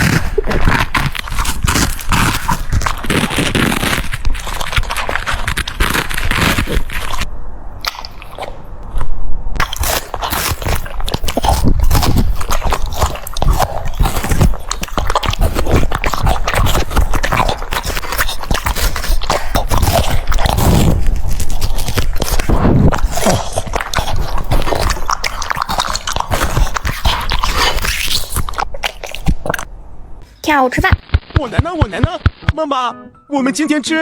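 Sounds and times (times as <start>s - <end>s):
dog chewing and crunching food: 0.0s - 29.7s.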